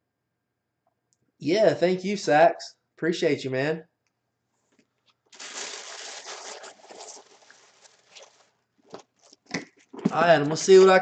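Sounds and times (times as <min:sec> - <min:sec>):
packaging rustling and crinkling: 0:05.3 - 0:10.2.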